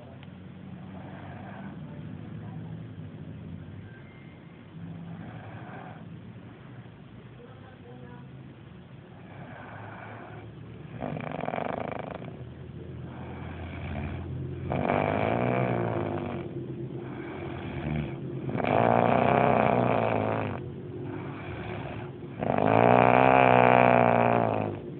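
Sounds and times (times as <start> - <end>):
person snoring: 0.8 - 2.0, 5.0 - 6.1, 9.2 - 12.4, 13.1 - 24.9.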